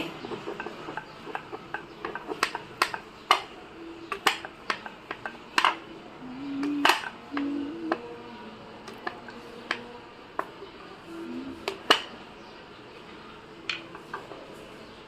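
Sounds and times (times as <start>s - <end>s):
rolling pin clicking and knocking: 0.0s - 6.0s, 6.6s - 8.2s, 8.8s - 10.6s, 11.6s - 12.2s.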